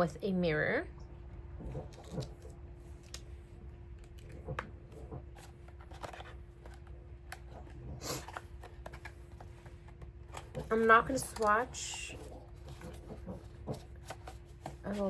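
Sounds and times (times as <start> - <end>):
faint steady hum: 0.0 - 15.0
compact and packaging handled: 1.6 - 3.4, 4.0 - 15.0.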